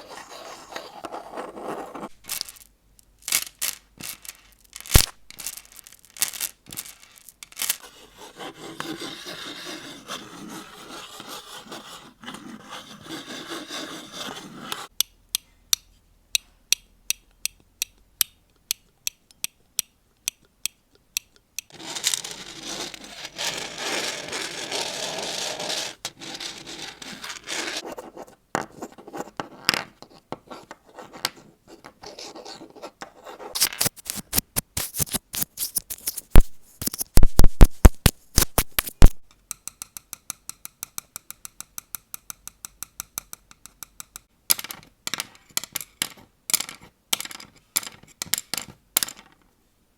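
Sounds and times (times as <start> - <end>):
dry rubbing and scraping: 0.0 - 2.5, 7.8 - 14.9, 21.7 - 28.3, 32.0 - 39.2.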